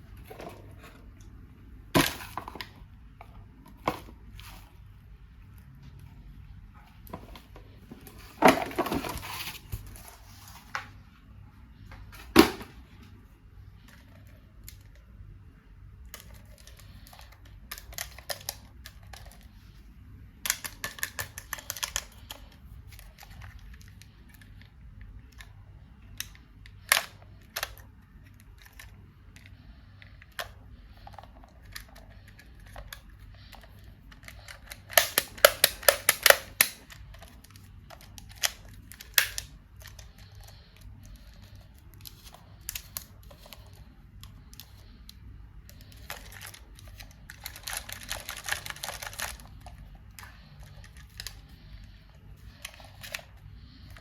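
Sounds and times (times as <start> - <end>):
plastic toys clicking and tapping: 20.5 - 24.5, 30.2 - 51.4.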